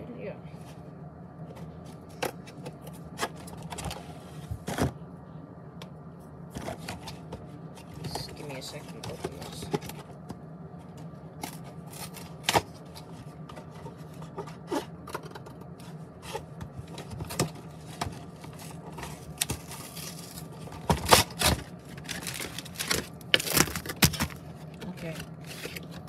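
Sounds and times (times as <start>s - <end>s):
packaging crackling and clicking: 16.9s - 26.0s.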